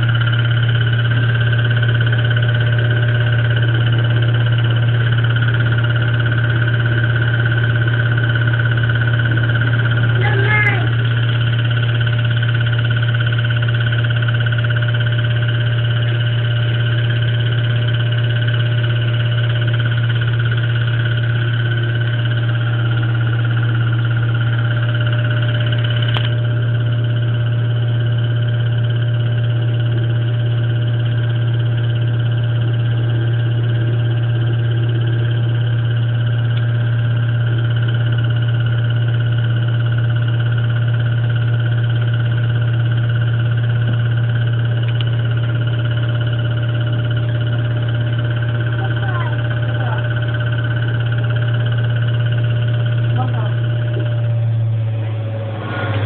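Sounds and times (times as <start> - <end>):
washing machine spinning: 0.0 - 56.0.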